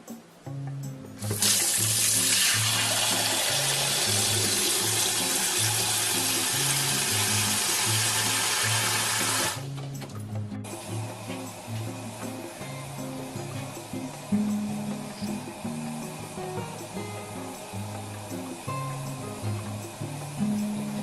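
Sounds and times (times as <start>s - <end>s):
background music: 0.0s - 21.0s
tap water running into pot: 1.2s - 9.7s.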